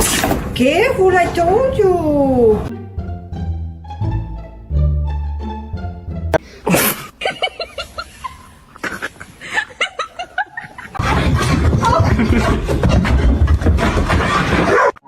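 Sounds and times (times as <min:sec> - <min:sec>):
person laughing breathily: 0:06.4 - 0:11.1.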